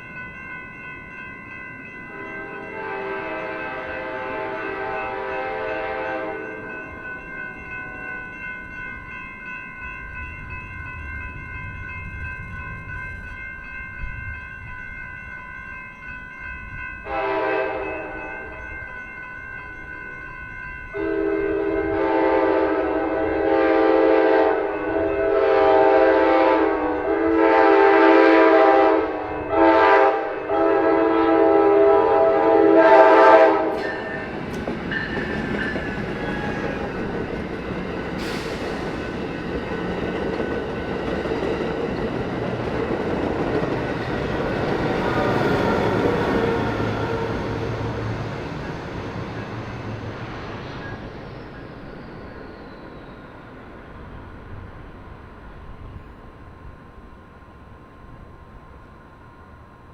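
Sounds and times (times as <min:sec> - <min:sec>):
crossing bells ringing: 0:00.0 - 0:55.0
train wheels rumbling on rails: 0:00.0 - 0:59.3
train air horn blasts: 0:02.1 - 0:06.6, 0:17.0 - 0:18.6, 0:21.0 - 0:34.2, 0:36.2 - 0:36.9.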